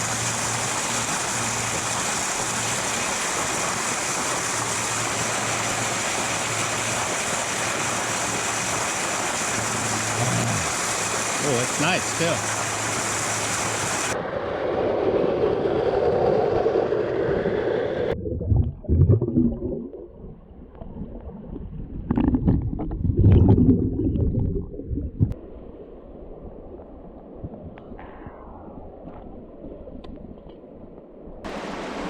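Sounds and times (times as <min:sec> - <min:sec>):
waterfall rushing water: 0:00.0 - 0:14.2, 0:31.5 - 0:32.0
underwater rumbling and gurgling: 0:13.9 - 0:31.5.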